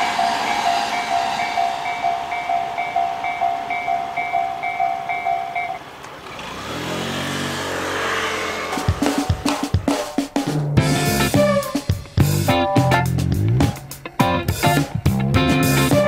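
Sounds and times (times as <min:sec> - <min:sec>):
level crossing warning bell: 0:00.0 - 0:06.1
vehicle engine pulling away: 0:05.8 - 0:11.4.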